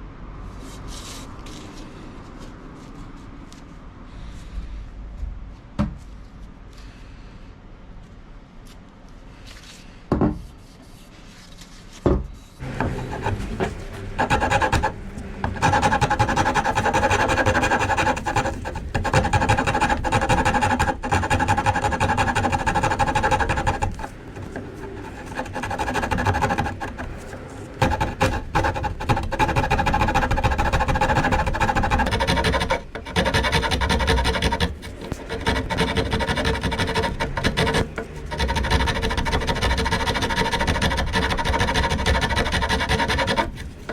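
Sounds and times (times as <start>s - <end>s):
hand rasp scraping wood: 12.6s - 43.9s.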